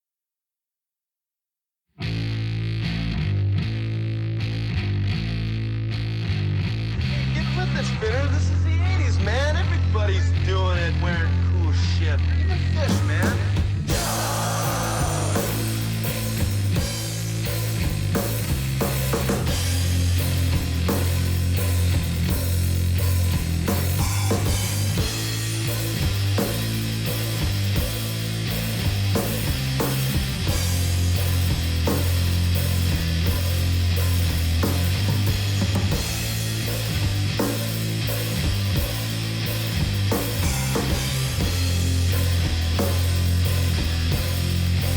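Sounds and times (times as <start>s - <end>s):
electric guitar and bass riff: 2.0s - 44.9s
drum kit: 12.6s - 44.9s.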